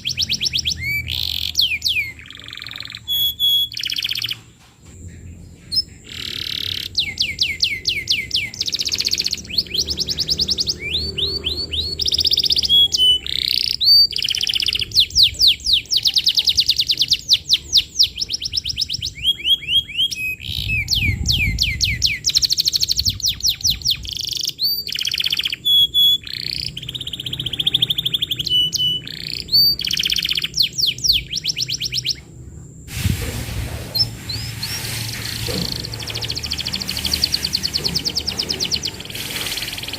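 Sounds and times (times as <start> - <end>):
canary singing trills: 0.0 - 39.9
steady hiss: 32.9 - 39.9.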